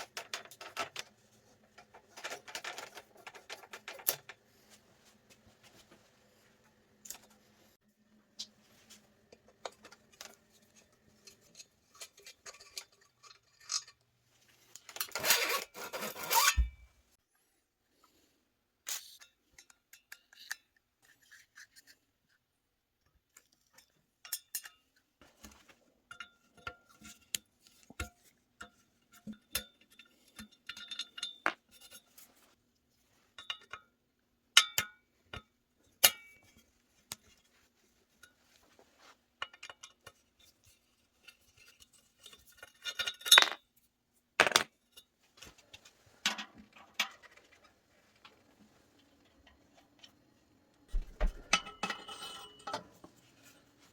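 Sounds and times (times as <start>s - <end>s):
metal tools clinking: 50.9s - 52.9s.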